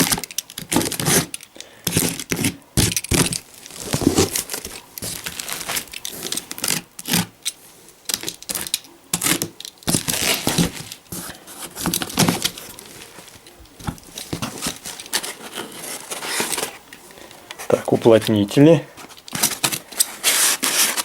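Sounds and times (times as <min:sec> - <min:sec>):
cardboard box being opened: 0:03.5 - 0:06.5, 0:09.9 - 0:16.8, 0:19.0 - 0:21.0.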